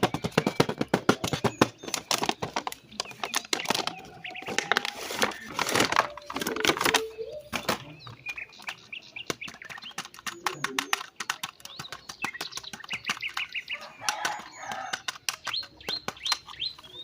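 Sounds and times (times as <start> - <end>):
small birds chirping: 0.0 - 17.0
sharp clicks and taps: 8.6 - 17.0.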